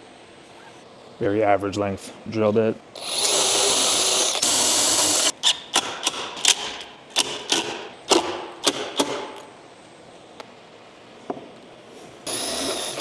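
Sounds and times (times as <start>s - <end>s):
power drill whining: 3.0s - 5.3s, 12.3s - 13.0s.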